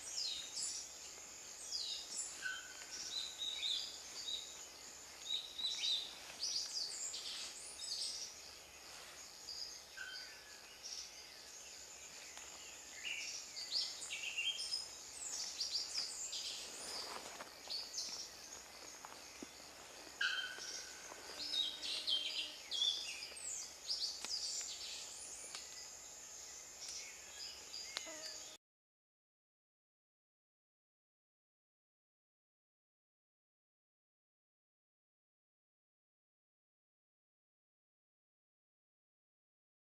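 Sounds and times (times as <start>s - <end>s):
forest chorus of chirps and whistles: 0.0s - 28.6s.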